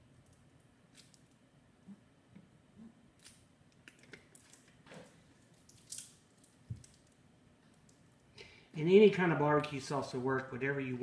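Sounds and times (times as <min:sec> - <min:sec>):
sauce squishing: 0:03.1 - 0:08.4.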